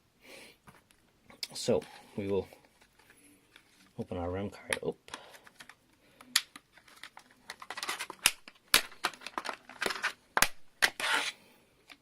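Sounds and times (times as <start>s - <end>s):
plastic clicks and snaps: 4.6s - 10.6s
plastic packaging crinkling: 6.5s - 10.2s.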